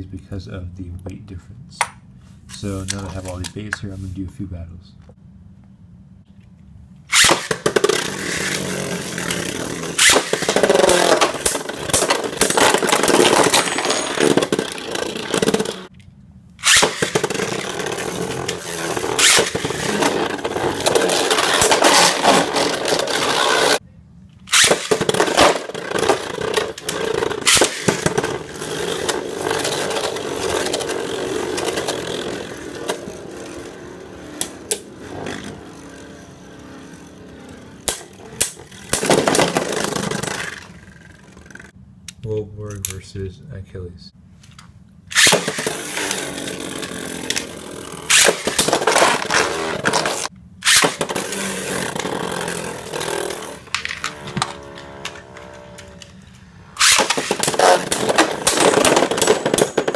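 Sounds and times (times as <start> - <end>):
spinning tops clashing: 7.1 - 15.9, 16.6 - 23.8, 24.5 - 41.7.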